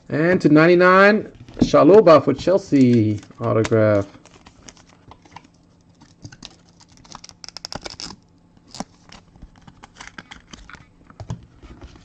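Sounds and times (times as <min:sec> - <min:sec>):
trading cards clicking and snapping: 0:02.8 - 0:05.5.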